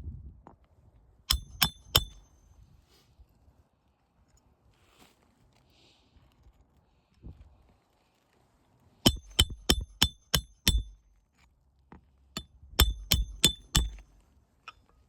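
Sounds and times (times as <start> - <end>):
hammer striking metal: 1.3 - 2.4, 9.1 - 11.0, 12.4 - 14.0.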